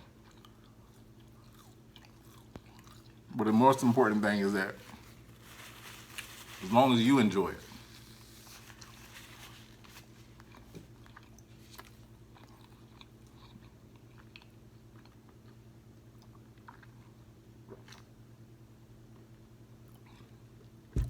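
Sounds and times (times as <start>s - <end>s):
person chewing crispy food: 0.0s - 3.3s, 7.7s - 18.2s, 19.1s - 20.6s
low steady hum: 0.0s - 21.0s.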